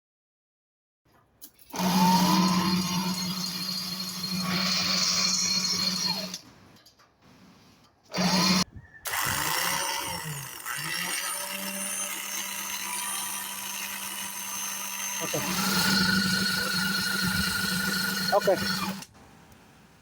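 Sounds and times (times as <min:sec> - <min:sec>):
outboard motor misfiring: 0:11.9 - 0:19.1.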